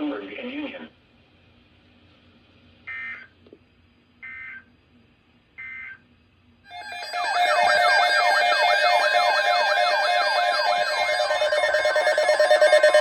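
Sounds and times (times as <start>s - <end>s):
digital tone bursts: 6.7s - 13.0s
siren-like alert sound: 6.7s - 13.0s.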